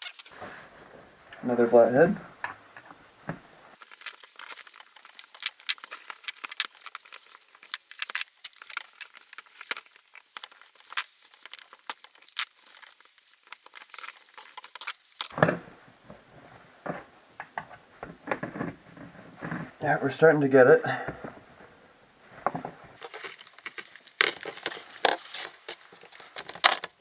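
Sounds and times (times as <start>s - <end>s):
rubber and metal crackling: 0.0s - 0.5s, 3.7s - 15.8s, 18.0s - 19.8s, 22.4s - 27.0s.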